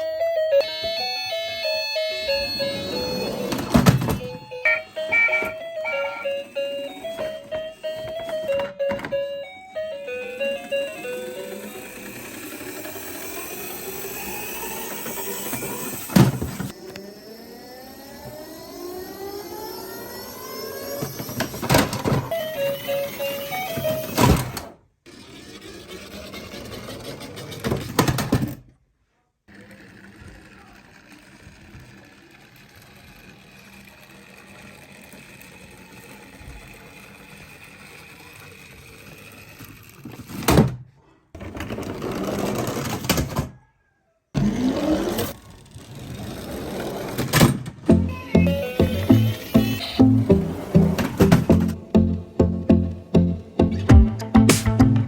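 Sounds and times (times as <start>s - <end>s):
toy siren: 0.0s - 24.6s, 47.9s - 51.7s
toy car wheels rattling: 10.4s - 16.8s, 25.1s - 28.2s, 29.5s - 40.4s.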